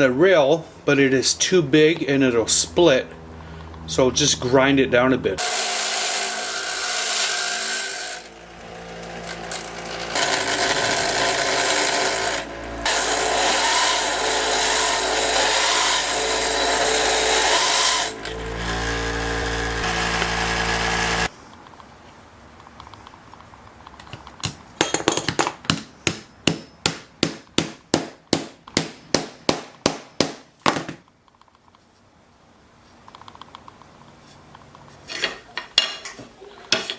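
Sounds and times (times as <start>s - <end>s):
power grinder grinding steel: 5.4s - 21.3s.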